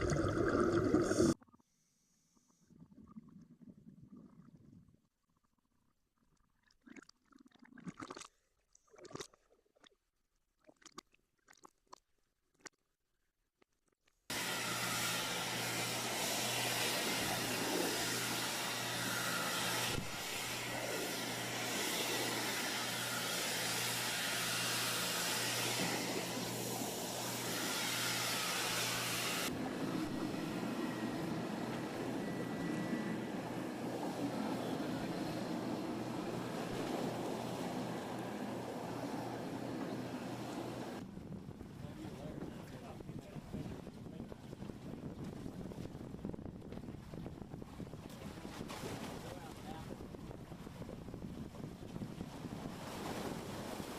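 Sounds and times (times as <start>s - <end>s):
low engine hum: 29.4s - 52.4s
rush of water and wind: 29.4s - 53.9s.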